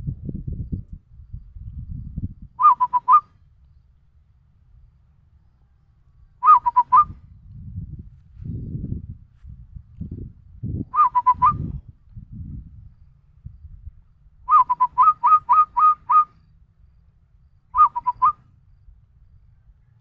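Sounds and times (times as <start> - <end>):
person whistling dove coo: 2.6 - 3.2, 6.4 - 7.1, 11.0 - 11.8, 14.5 - 16.3, 17.8 - 18.4.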